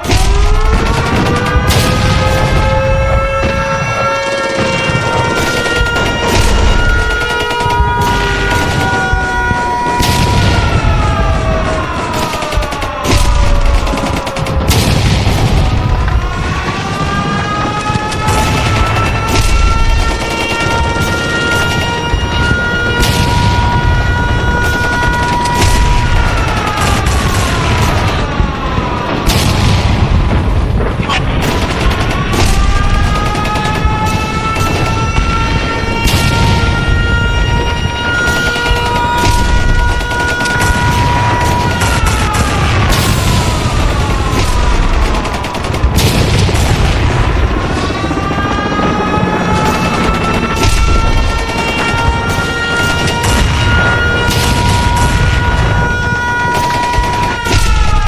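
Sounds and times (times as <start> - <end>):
air-raid siren wailing: 0.0 - 58.0
rumble of explosions: 0.0 - 58.0
sharp booms: 0.0 - 58.0
gunfire bursts: 17.2 - 58.0.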